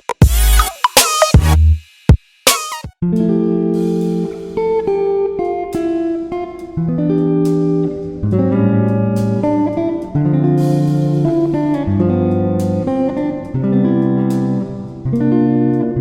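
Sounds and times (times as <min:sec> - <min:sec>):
background music with plucked guitar: 0:03.0 - 0:16.0.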